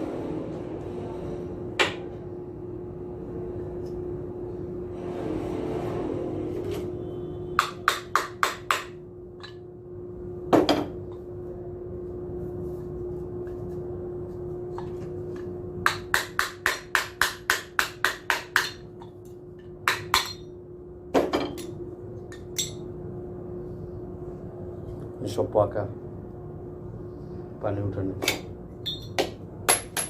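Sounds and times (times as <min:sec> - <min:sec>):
steady hum: 0:00.0 - 0:30.0
hammer striking metal: 0:07.6 - 0:09.6, 0:15.8 - 0:18.9, 0:19.9 - 0:20.5, 0:28.2 - 0:30.0.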